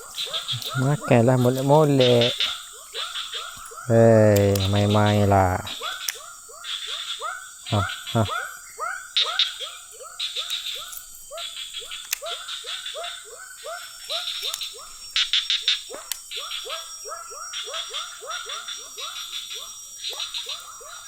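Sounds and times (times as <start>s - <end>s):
high fast chattering: 0.0s - 5.8s, 7.7s - 8.4s
small animal crying: 0.0s - 11.4s.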